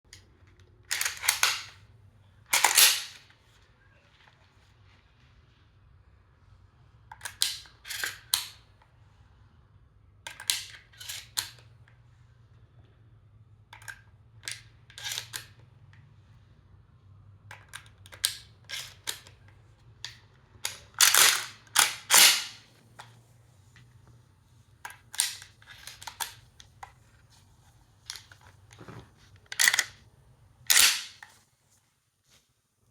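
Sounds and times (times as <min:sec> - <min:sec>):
shotgun loading clicks and clacks: 0:00.9 - 0:01.8, 0:02.5 - 0:03.3, 0:07.2 - 0:08.5, 0:10.3 - 0:11.6, 0:13.8 - 0:15.5, 0:17.5 - 0:19.4, 0:20.1 - 0:23.1, 0:24.9 - 0:26.7, 0:28.1 - 0:30.0, 0:30.7 - 0:31.4.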